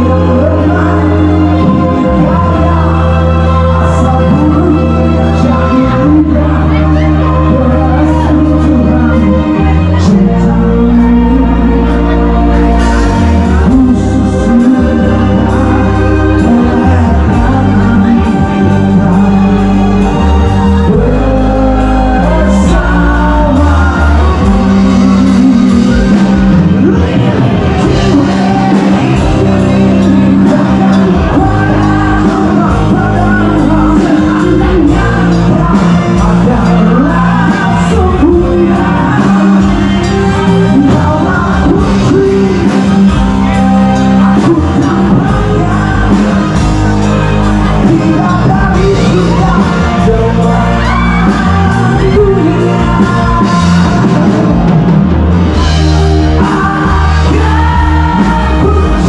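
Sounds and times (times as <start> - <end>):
person singing: 0.0 - 59.0
rock band playing live: 0.0 - 59.0.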